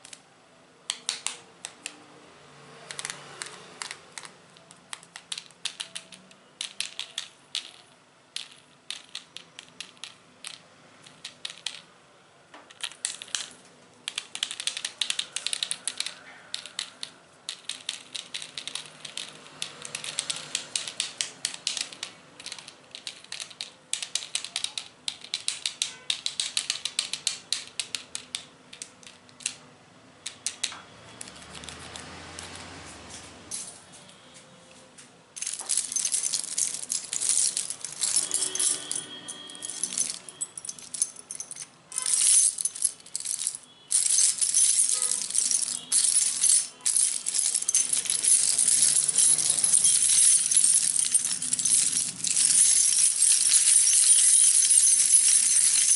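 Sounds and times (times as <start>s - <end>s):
shaking rattle: 35.4s - 55.9s.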